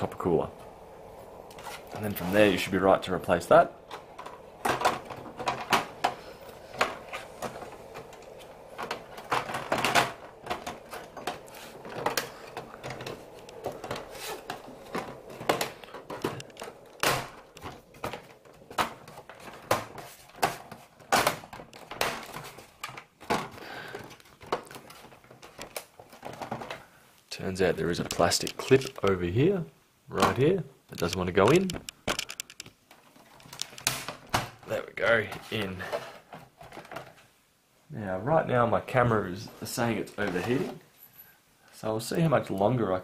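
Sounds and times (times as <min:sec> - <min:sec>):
plastic parts clicking and knocking: 0:03.5 - 0:26.9, 0:27.8 - 0:29.2, 0:30.2 - 0:37.2.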